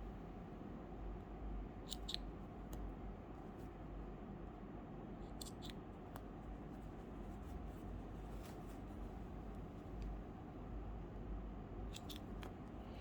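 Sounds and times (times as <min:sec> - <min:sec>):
scissors snipping stitches: 0:01.9 - 0:02.8, 0:11.9 - 0:12.6.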